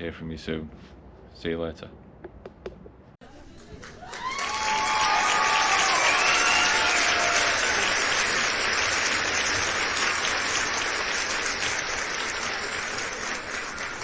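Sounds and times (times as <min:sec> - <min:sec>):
crowd applause: 0:03.5 - 0:14.0.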